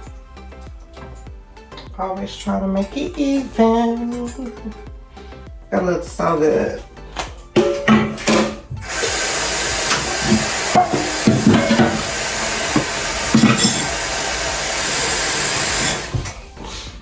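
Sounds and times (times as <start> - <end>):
food sizzling in a pan: 8.8 - 16.4.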